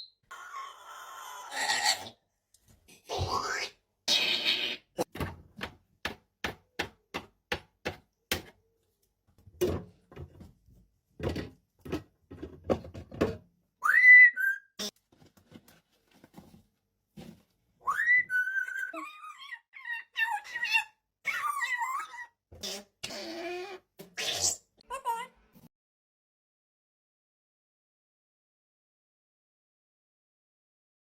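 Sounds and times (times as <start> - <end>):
parrot whistling: 13.8 - 14.8, 17.9 - 19.1.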